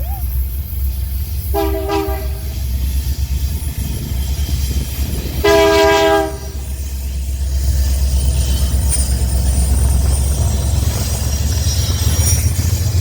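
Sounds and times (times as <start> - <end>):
low train rumble: 0.0 - 13.0
locomotive air horn blasts: 1.5 - 2.6, 5.4 - 6.6.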